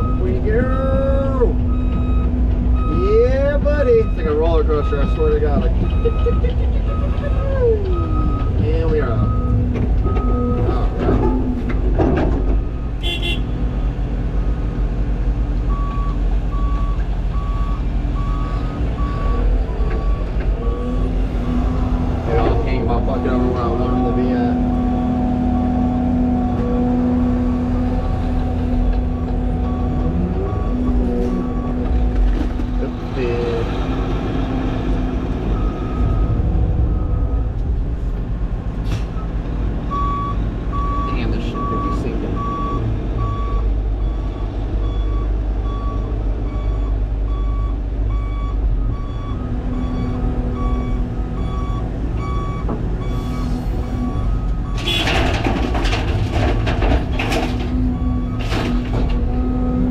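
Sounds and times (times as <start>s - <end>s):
truck reversing alarm beeps: 0.0s - 13.4s, 15.6s - 33.9s, 34.5s - 37.8s, 38.9s - 59.9s
excavator diesel engine running: 0.0s - 59.9s
backup alarm beeping: 39.9s - 55.1s.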